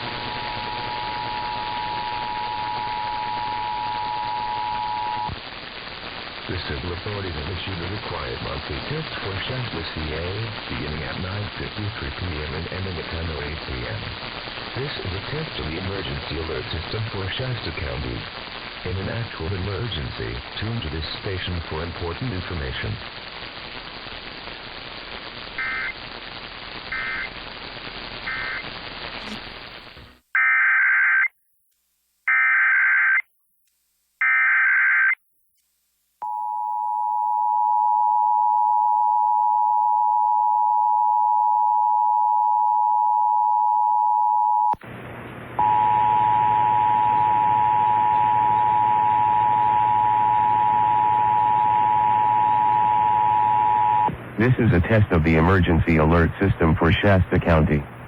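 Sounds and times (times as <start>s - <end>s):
radio static: 0.0s - 30.7s, 44.7s - 58.0s
screechy data header bursts: 28.3s - 30.7s.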